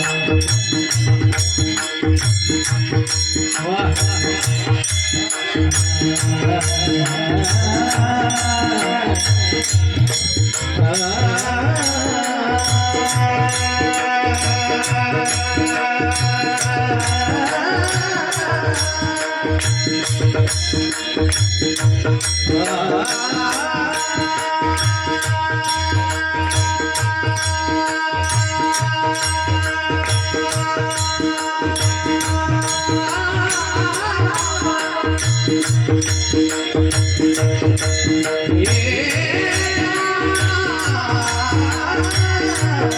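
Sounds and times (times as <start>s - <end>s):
held melodic line: 0.0s - 42.9s
high metallic strikes: 0.0s - 42.9s
mridang drum rhythm: 0.0s - 42.9s.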